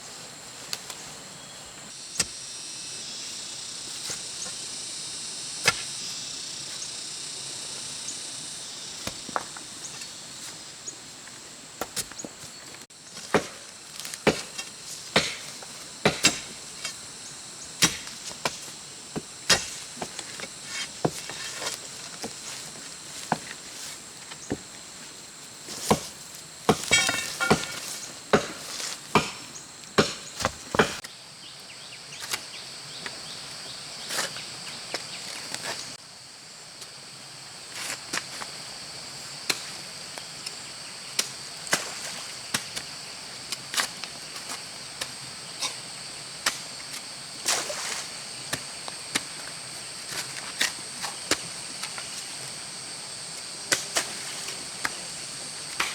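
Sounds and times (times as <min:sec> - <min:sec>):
digging tools chopping soil: 0:02.2 - 0:02.4, 0:05.6 - 0:06.0, 0:13.2 - 0:17.0, 0:17.8 - 0:24.7, 0:25.7 - 0:31.0.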